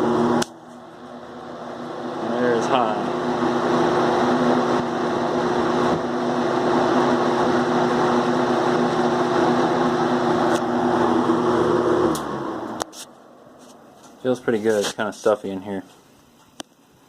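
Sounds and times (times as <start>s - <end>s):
motor hum: 0.0s - 14.3s
fan air rush: 0.0s - 17.0s.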